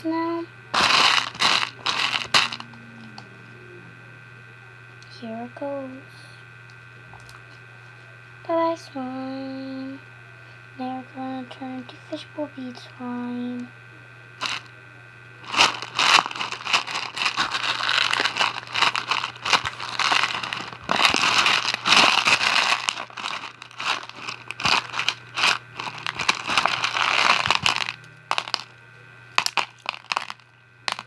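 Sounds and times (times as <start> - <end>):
hands kneading crunchy slime: 0.8 - 2.7, 15.4 - 28.6.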